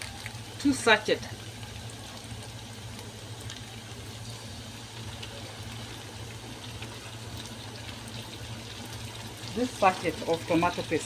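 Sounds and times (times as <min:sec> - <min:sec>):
spices sizzling in oil: 0:00.0 - 0:11.0.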